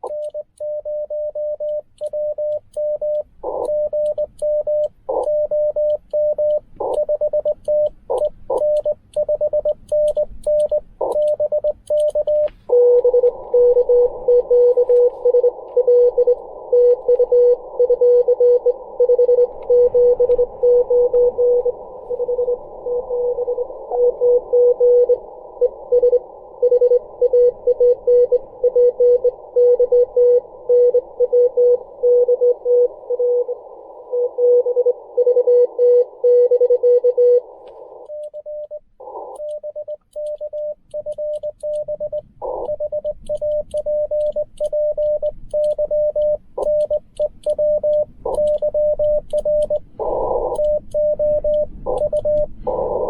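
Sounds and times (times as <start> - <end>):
high morse code tone: 0.0 - 53.0
low morse code tone: 0.0 - 53.0
radio band hiss: 37.4 - 38.1, 49.9 - 50.8, 51.8 - 53.0.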